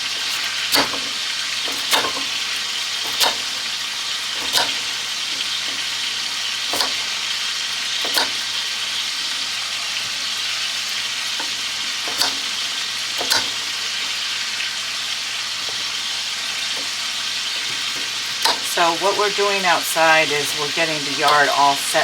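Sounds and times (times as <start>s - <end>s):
food frying in a skillet: 0.0s - 22.0s.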